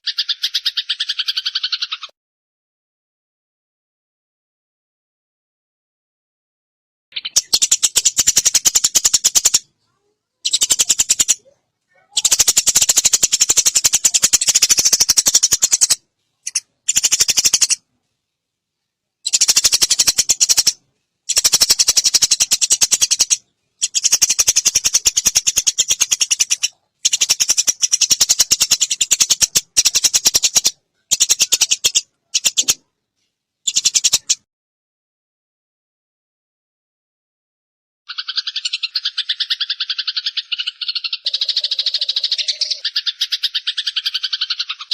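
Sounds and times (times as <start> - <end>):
songbird rattling trill: 0.0 - 2.1, 7.2 - 9.7, 10.4 - 11.4, 12.2 - 17.8, 19.2 - 32.8, 33.7 - 34.4, 38.1 - 44.9.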